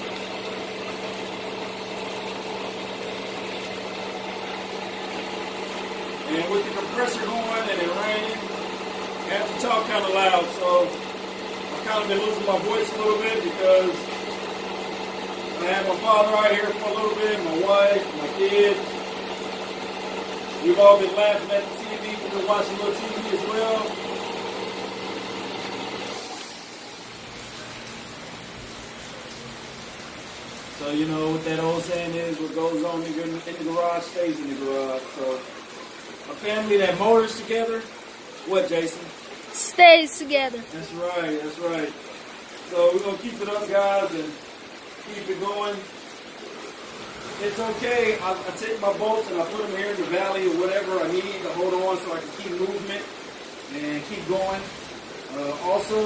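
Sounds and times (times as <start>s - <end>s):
air compressor humming: 0.0s - 32.4s
rain hissing: 0.0s - 56.0s.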